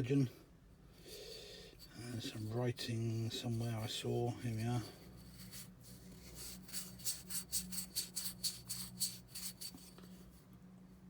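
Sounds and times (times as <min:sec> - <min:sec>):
hand rubbing glass bottle: 0:05.1 - 0:10.0.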